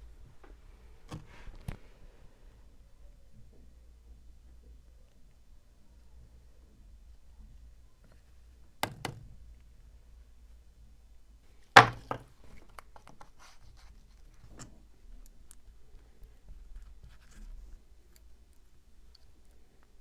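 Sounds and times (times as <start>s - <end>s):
hard objects knocking: 11.8s - 12.3s.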